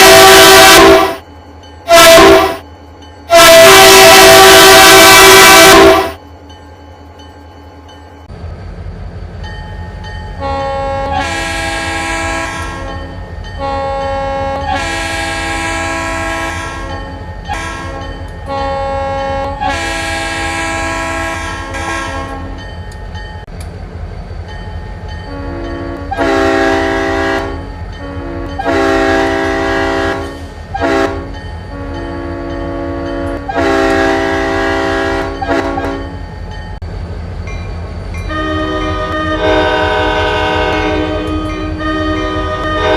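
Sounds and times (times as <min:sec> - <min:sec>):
locomotive air horn: 0:00.0 - 0:01.2, 0:01.9 - 0:02.6, 0:03.3 - 0:06.2, 0:10.4 - 0:13.0, 0:13.6 - 0:22.6, 0:25.3 - 0:36.0, 0:38.3 - 0:42.9.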